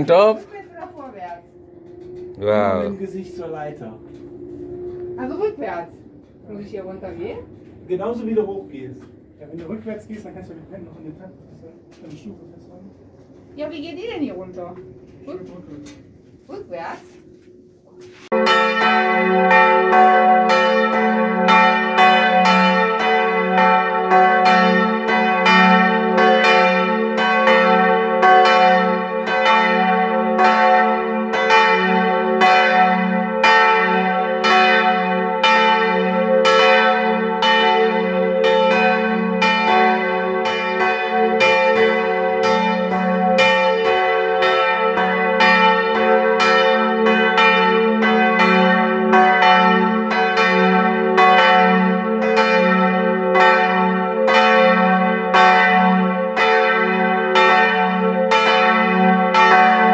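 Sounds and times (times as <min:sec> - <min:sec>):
church bells ringing in a peal: 0:00.0 - 0:09.0, 0:18.0 - 0:59.9
steady ringing hum: 0:00.0 - 0:25.7.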